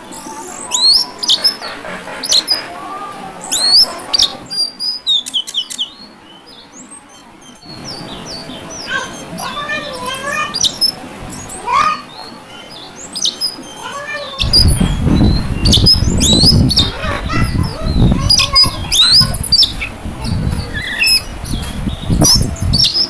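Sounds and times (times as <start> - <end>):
bird singing whistles and chirps: 0.1 - 1.6, 3.5 - 11.6, 12.6 - 16.9, 20.5 - 23.0.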